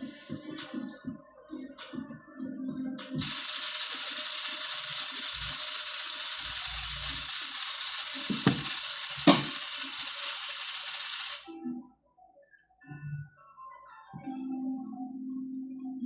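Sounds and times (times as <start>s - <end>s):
loud steady hiss: 3.2s - 11.5s.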